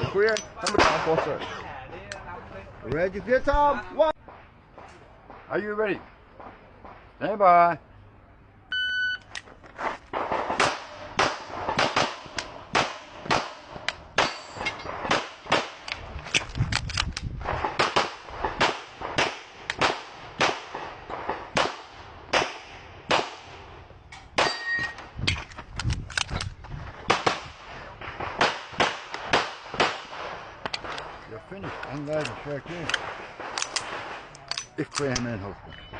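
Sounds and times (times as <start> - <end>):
metal target ringing: 24.1 - 25.0.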